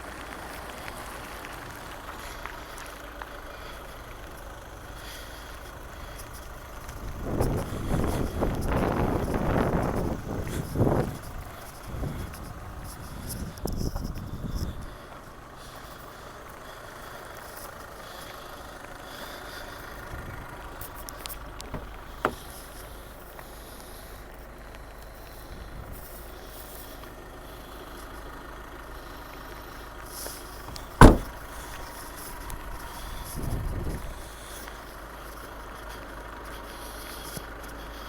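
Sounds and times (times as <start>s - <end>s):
diesel engine idling: 0.0s - 38.0s
loud sharp knock: 31.0s - 31.3s.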